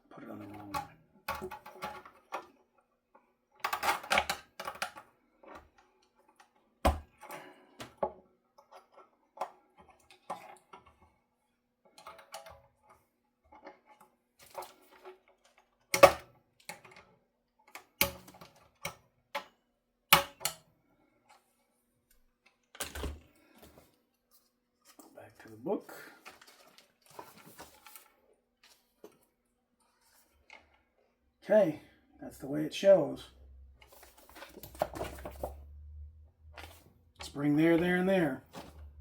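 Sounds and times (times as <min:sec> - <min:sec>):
clicks and knocks of tools: 0:11.9 - 0:12.7, 0:20.1 - 0:20.7.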